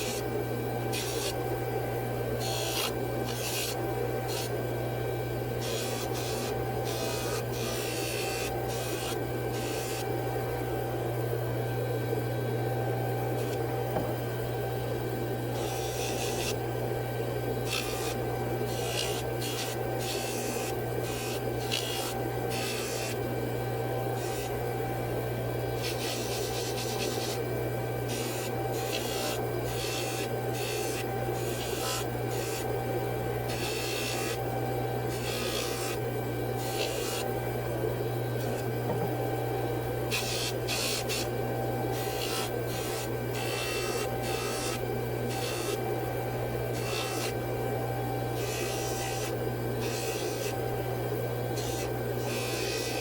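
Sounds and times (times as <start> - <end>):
electrical hum: 0.0 - 53.0
metal file rasping: 0.9 - 1.4, 2.4 - 4.5, 17.7 - 23.2, 28.1 - 32.7, 33.5 - 34.4, 35.1 - 36.0, 36.6 - 37.3, 40.1 - 41.3, 41.9 - 45.8, 46.7 - 47.4, 48.4 - 50.6, 51.6 - 53.0.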